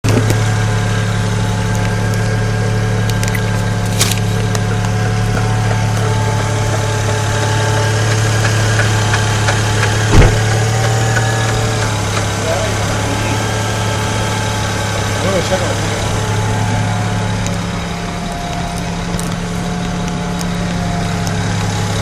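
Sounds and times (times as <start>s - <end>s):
car engine idling with knocking: 0.0s - 22.0s
loud thump: 9.9s - 11.8s.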